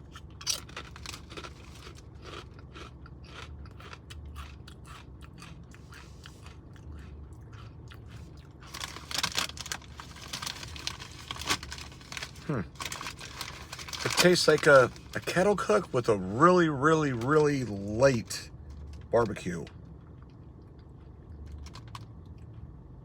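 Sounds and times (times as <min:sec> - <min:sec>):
person crunching potato chip: 0:00.0 - 0:16.0.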